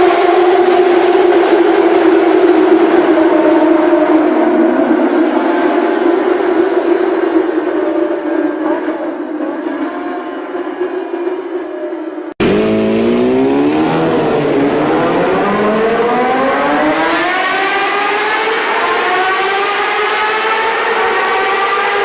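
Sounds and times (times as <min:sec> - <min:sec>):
motorcycle engine revving: 0:12.4 - 0:22.0.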